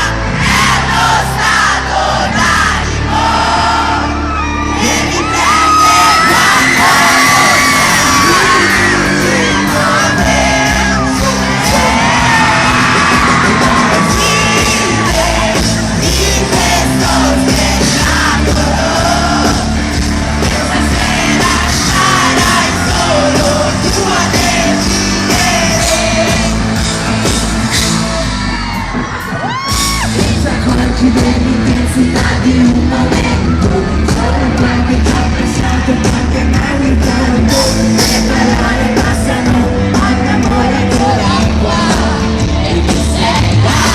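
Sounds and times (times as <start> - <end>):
lead singer singing: 0.0 - 27.7, 29.7 - 43.9
pop-rock band playing live: 0.0 - 43.9.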